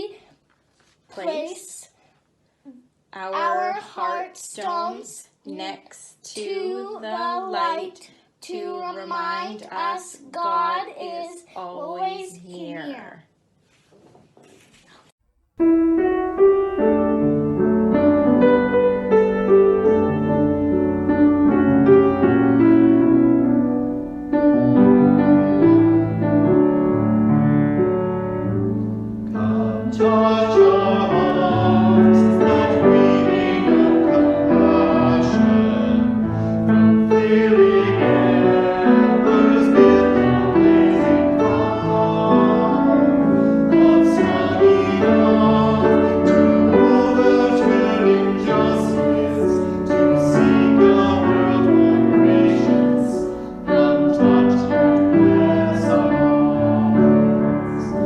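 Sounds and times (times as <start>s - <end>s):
slow hymn-like piano piece: 15.6s - 58.0s
person singing: 24.7s - 26.2s, 29.3s - 58.0s.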